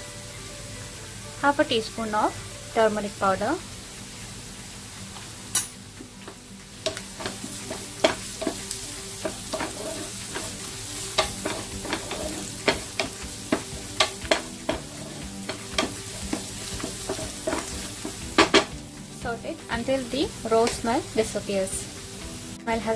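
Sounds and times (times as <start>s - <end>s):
onion mixture sizzling in oil: 0.0s - 22.9s
spatula scraping a pan: 3.4s - 19.2s.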